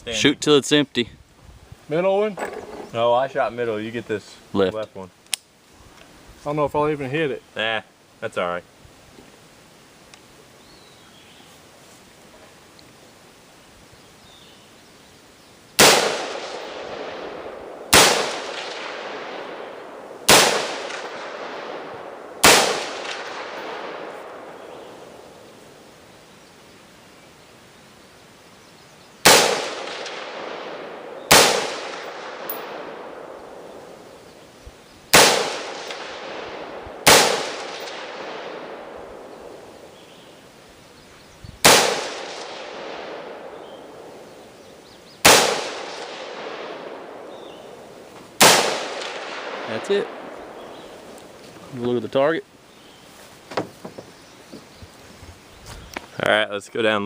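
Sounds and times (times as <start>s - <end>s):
rifle shots with echo: 15.8s - 25.6s, 29.2s - 34.3s, 35.1s - 40.0s, 41.6s - 44.4s, 45.2s - 51.2s.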